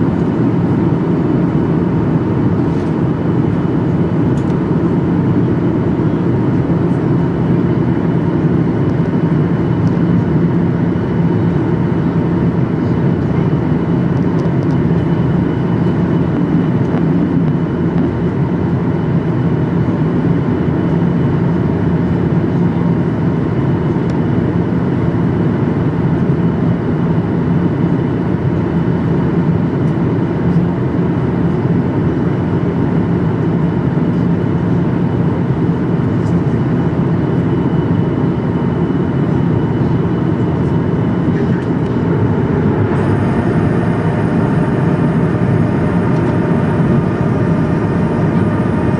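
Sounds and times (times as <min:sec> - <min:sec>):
airliner cabin engine rumble: 0:00.0 - 0:48.9
faint steady hum: 0:38.3 - 0:48.9.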